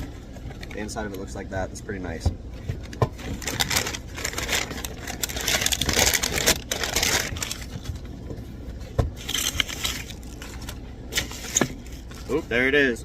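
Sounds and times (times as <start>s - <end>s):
packaging crinkling and rustling: 2.8s - 8.2s, 9.2s - 12.4s.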